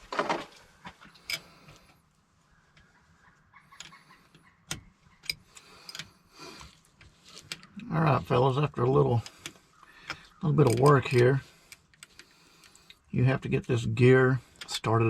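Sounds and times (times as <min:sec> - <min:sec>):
metal parts clicking and clinking: 0:01.2 - 0:01.8, 0:10.6 - 0:11.2.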